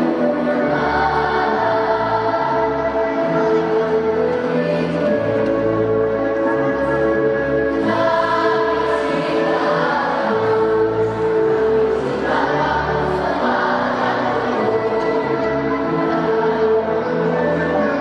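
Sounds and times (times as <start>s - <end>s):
children's choir singing: 0.0s - 18.0s
instrumental accompaniment: 0.0s - 18.0s.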